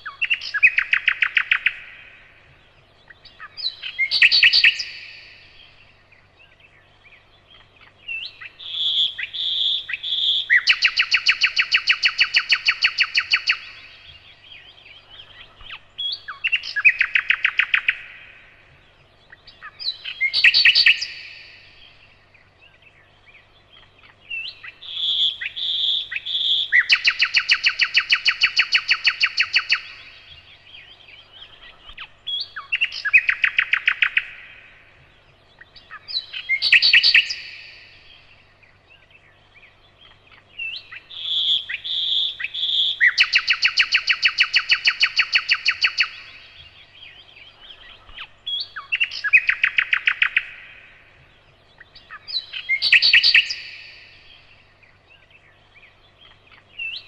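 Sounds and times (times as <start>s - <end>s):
nightingale singing with trills: 0.0s - 57.0s.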